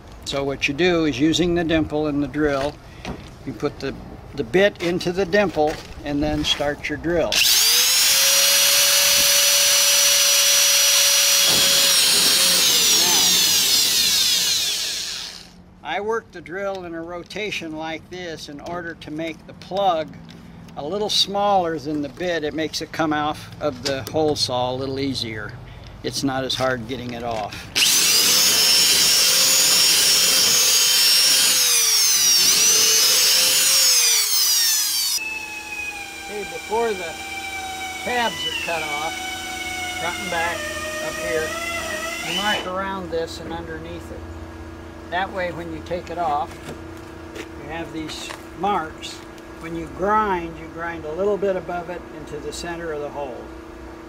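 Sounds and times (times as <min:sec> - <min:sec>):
electric drill motor whine: 0:07.3 - 0:15.6, 0:27.8 - 0:42.8.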